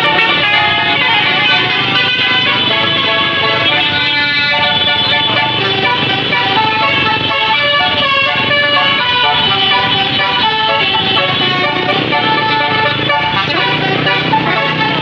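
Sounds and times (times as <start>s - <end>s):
musical bus air horn tune: 0.0s - 15.0s.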